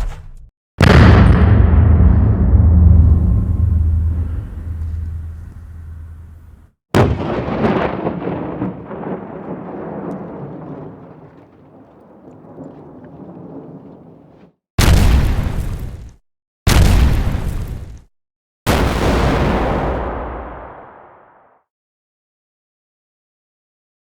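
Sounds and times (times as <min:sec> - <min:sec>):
explosion rumble: 0:00.8 - 0:16.0
explosion with rolling rumble: 0:00.8 - 0:16.1, 0:16.7 - 0:18.0, 0:18.7 - 0:21.3.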